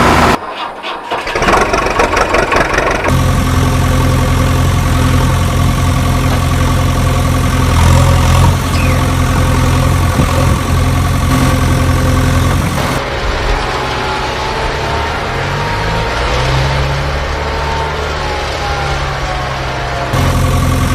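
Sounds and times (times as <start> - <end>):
vehicle engine idling: 1.3 - 13.0, 20.1 - 20.9.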